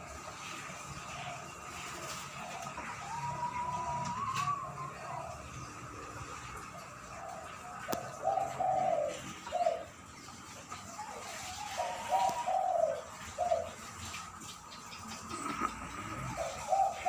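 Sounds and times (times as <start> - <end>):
dove cooing: 0.1 - 17.0.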